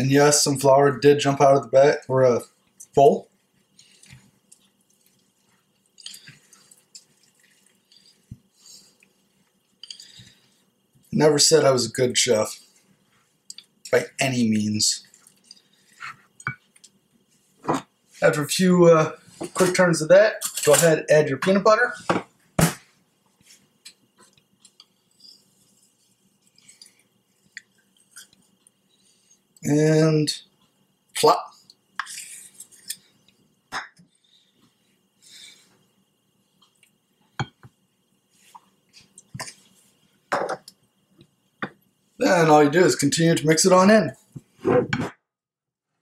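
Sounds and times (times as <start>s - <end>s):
spoon stirring wet dough: 1.6s - 11.1s, 12.6s - 18.3s, 23.3s - 29.6s.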